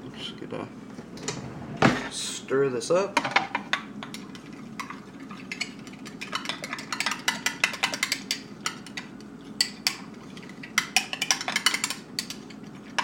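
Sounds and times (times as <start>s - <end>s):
utensil clinking against dish: 3.2s - 13.0s.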